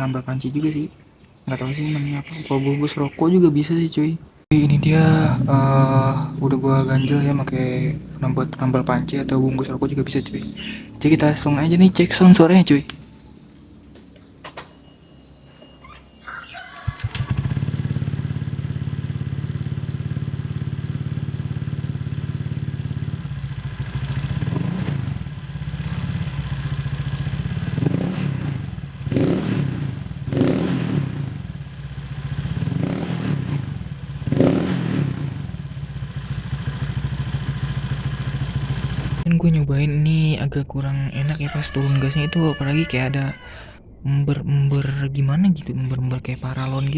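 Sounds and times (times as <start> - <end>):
scooter engine revving: 4.4 - 39.3
scooter engine starting and idling: 4.5 - 39.3.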